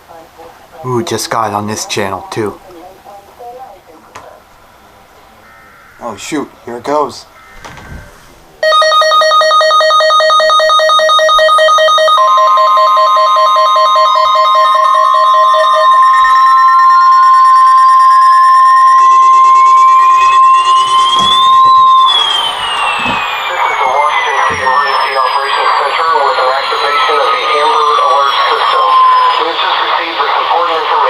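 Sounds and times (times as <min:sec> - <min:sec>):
steady single-pitch warning tone: 0:04.2 - 0:31.0
rapidly pulsing alarm beep: 0:08.6 - 0:31.0
upward sweeping tone: 0:16.0 - 0:29.2.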